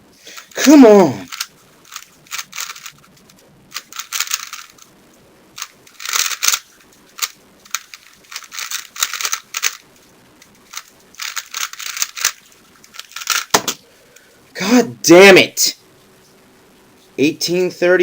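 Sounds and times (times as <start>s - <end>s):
puzzle cube plastic clicking: 0.3s - 4.9s, 5.6s - 9.8s, 10.7s - 13.8s.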